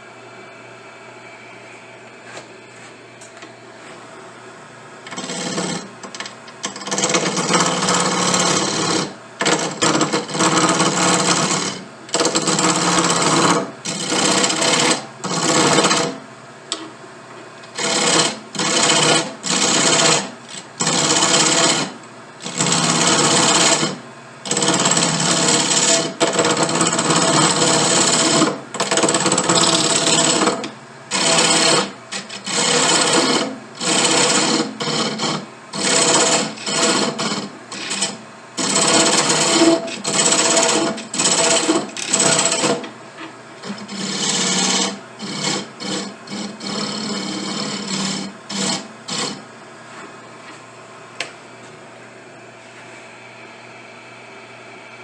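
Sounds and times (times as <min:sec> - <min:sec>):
power tool grinding wood: 0:05.1 - 0:16.9, 0:17.6 - 0:49.4.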